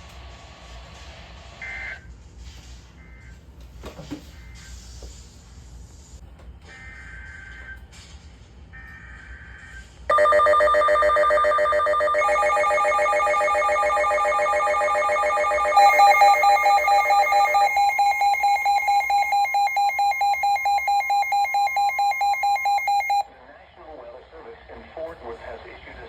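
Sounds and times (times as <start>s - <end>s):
electronic alarm ringing trill: 10.1s - 23.2s
warbling data tones: 10.1s - 23.2s
rapid pulsing alarm beeps: 10.1s - 23.3s.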